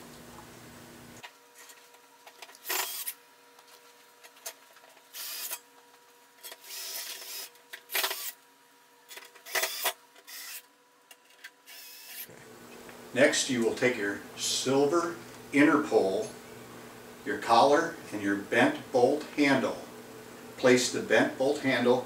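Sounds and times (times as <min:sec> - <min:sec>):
cordless drill driving screws: 0:02.6 - 0:03.2, 0:05.1 - 0:05.6, 0:06.5 - 0:08.4, 0:09.4 - 0:10.7, 0:11.7 - 0:12.3.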